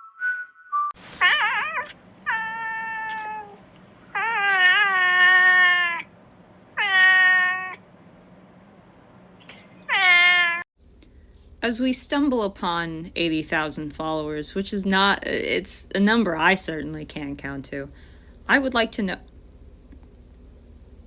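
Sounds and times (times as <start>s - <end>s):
cat meowing loudly: 1.2s - 6.1s, 6.8s - 7.8s, 9.9s - 10.6s.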